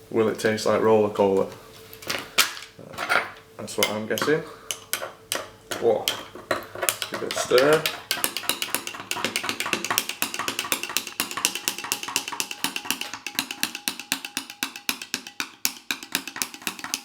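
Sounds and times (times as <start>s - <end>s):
spork clicking against cup: 3.8s - 17.0s.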